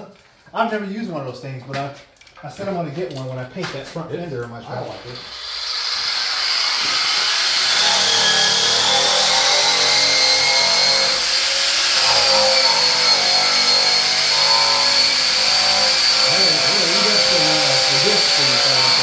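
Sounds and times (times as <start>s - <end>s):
stripping wheel grinding metal: 5.2s - 19.0s.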